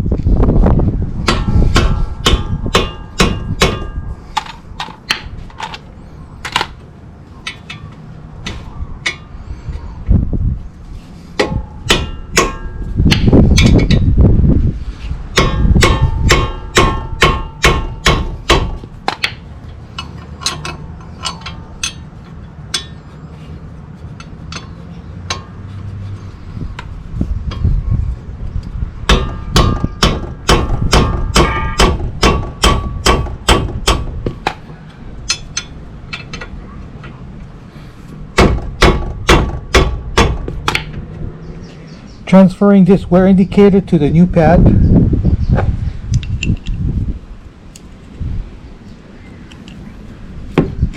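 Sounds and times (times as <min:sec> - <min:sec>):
hand tools tapping on metal: 0:07.4 - 0:09.3, 0:11.4 - 0:14.1, 0:15.3 - 0:23.1, 0:24.1 - 0:25.7, 0:28.6 - 0:37.2.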